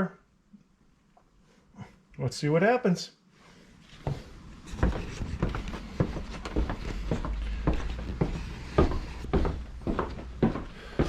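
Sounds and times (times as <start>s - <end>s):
steady low rumble: 4.1s - 11.0s.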